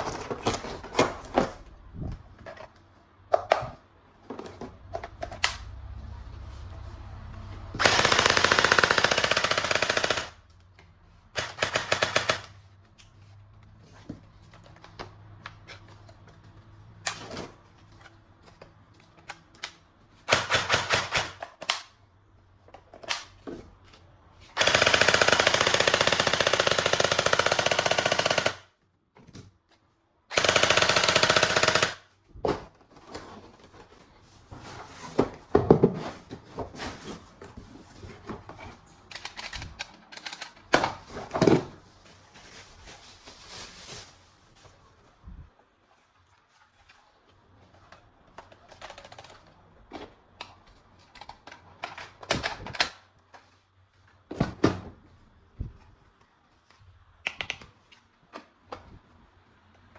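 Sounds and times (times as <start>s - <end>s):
toy gun firing rapid clatter: 7.8s - 10.4s, 11.4s - 12.5s, 20.3s - 21.4s, 24.6s - 28.7s, 30.4s - 32.0s.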